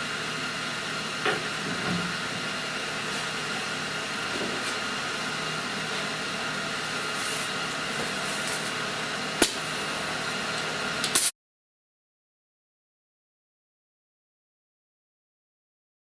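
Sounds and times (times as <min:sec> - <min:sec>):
machine hum with hiss: 0:00.0 - 0:11.3.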